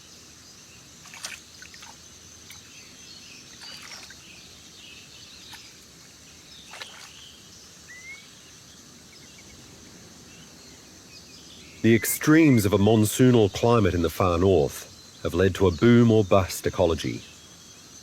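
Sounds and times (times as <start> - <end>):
bird chirps: 0.0 - 9.7
insects hissing: 0.0 - 18.0.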